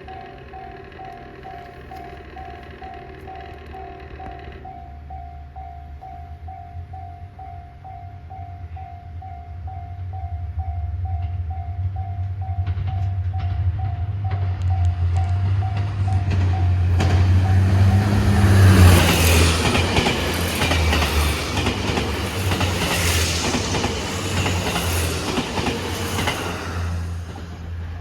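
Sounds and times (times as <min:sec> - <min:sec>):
wheels clattering over rail joints: 0:00.0 - 0:05.8, 0:12.2 - 0:28.0
level crossing warning bell dinging: 0:00.0 - 0:27.4
train engine humming low: 0:00.0 - 0:28.0.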